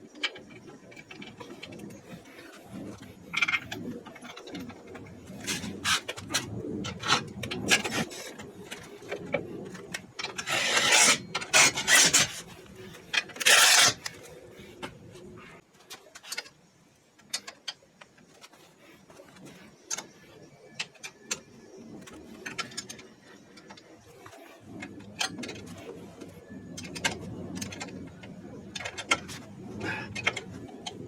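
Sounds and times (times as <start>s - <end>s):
scraping and rubbing: 0.2s - 15.6s
loud rasping bursts: 10.4s - 12.3s.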